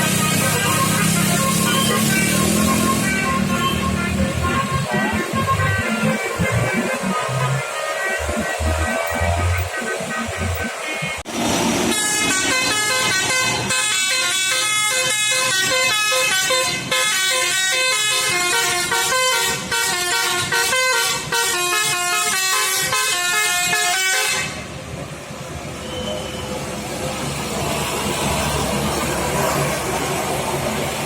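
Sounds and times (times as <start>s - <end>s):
multi-tone horn playing a tune: 0.0s - 11.1s, 11.8s - 24.6s.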